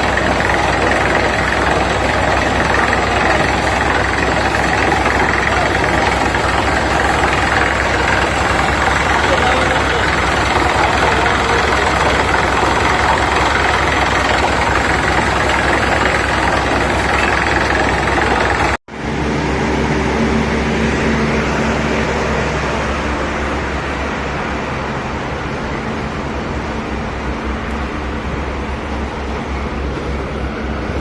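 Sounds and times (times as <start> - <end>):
drilling rig engine running: 0.0 - 24.6.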